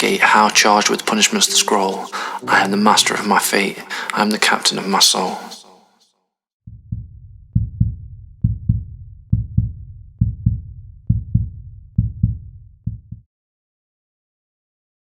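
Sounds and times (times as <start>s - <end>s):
heartbeat thumps: 6.7s - 13.2s.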